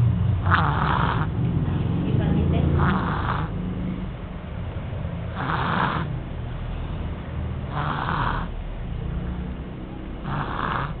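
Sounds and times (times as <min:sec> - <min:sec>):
toddler snoring: 0:00.4 - 0:01.4, 0:02.6 - 0:03.6, 0:05.3 - 0:06.2, 0:07.7 - 0:09.6, 0:10.2 - 0:11.0
steady low drone: 0:08.5 - 0:10.3.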